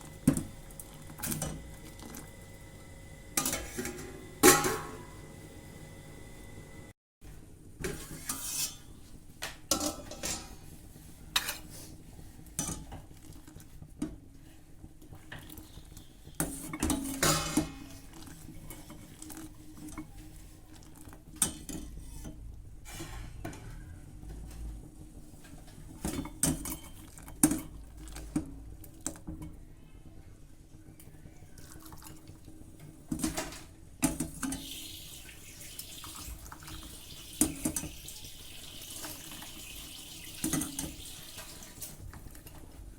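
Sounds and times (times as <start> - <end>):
kitchen utensils clinking on dishes: 3.4 - 5.1.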